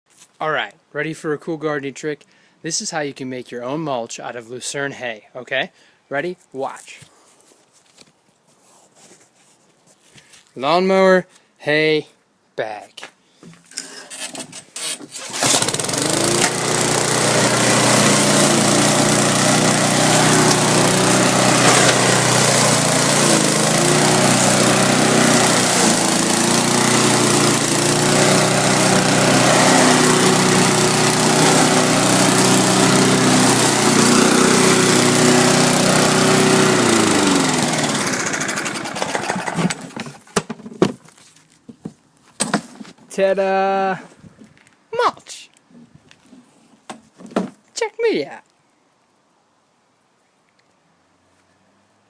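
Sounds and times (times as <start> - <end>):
lawn mower engine: 13.7 - 40.3.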